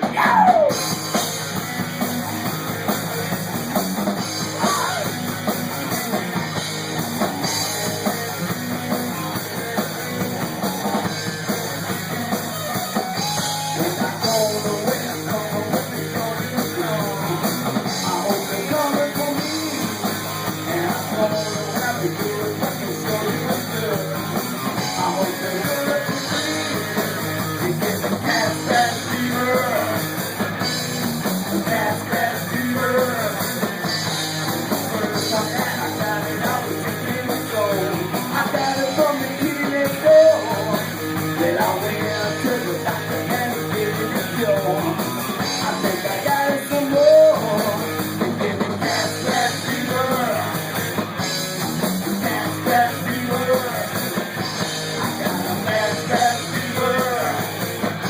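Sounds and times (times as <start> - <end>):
drums: 0.0 - 58.0
electric guitar: 0.0 - 58.0
person singing: 4.4 - 5.2, 12.6 - 30.1, 31.4 - 33.6, 34.8 - 50.7, 52.1 - 57.6.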